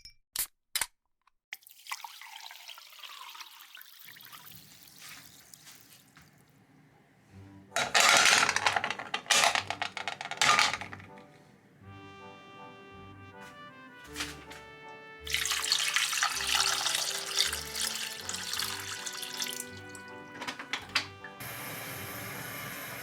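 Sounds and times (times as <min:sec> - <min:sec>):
liquid pouring: 0:01.6 - 0:06.5, 0:15.2 - 0:20.9
splashing running water: 0:01.6 - 0:06.5, 0:14.0 - 0:23.0
soft background music: 0:06.6 - 0:23.0.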